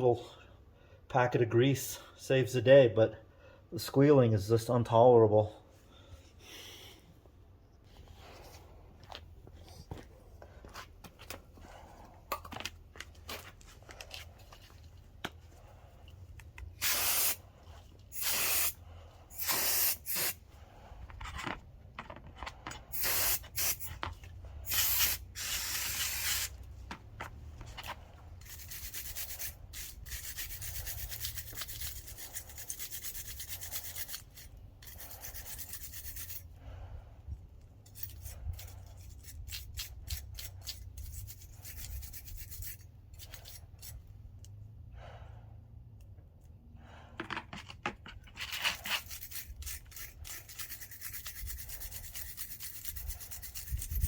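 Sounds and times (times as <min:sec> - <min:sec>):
hand scrubbing metal parts: 0:12.4 - 0:36.6, 0:37.8 - 0:44.4, 0:47.2 - 0:54.0
scraping brake parts: 0:20.2 - 0:36.5, 0:47.1 - 0:53.9.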